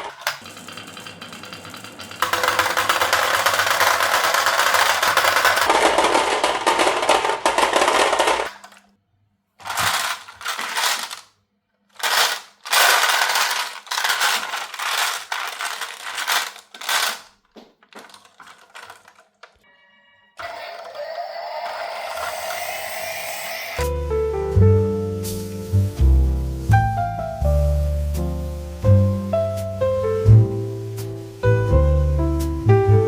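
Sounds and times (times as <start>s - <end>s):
marbles rolling down wooden run: 0.0s - 8.8s, 9.6s - 11.3s, 12.0s - 17.3s, 20.4s - 23.8s.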